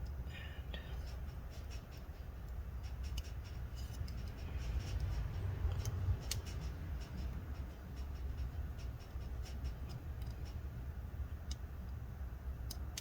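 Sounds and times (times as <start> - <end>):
low steady rumble: 0.0 - 13.0
plastic parts clicking: 12.6 - 13.0.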